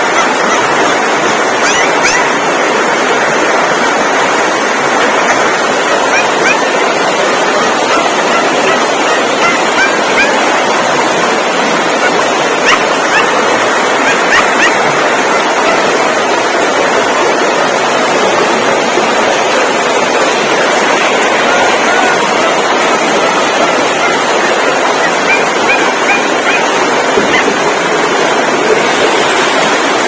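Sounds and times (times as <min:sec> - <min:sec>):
loud steady rushing noise: 0:00.0 - 0:30.0
puppy whimpering and yelping: 0:01.6 - 0:02.3, 0:07.9 - 0:10.4, 0:12.0 - 0:13.4, 0:14.0 - 0:14.8, 0:25.0 - 0:26.7, 0:27.3 - 0:27.5.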